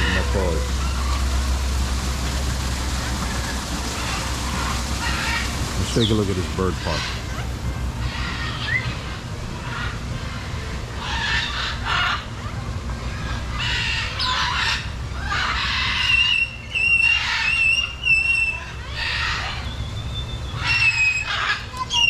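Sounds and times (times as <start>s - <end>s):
macaws squawking: 0.0s - 9.8s
steady low rumble: 0.0s - 11.0s.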